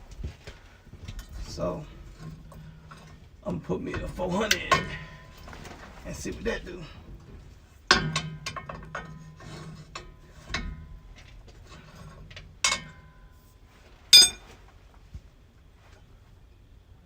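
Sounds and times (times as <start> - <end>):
tools clinking and scraping on metal: 1.1 - 7.0, 7.7 - 14.6
metal clank: 3.9 - 6.9, 7.7 - 14.6
ringing metal strike: 14.2 - 14.4.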